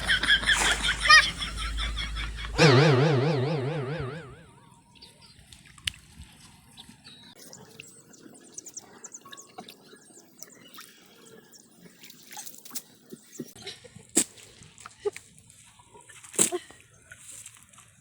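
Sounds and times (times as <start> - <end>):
water drips and splashes: 0.0 - 1.6, 5.4 - 8.0, 8.7 - 17.9.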